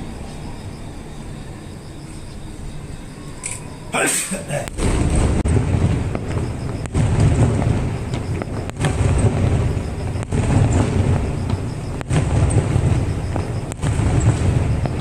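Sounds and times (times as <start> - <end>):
fireworks booming: 4.6 - 15.0.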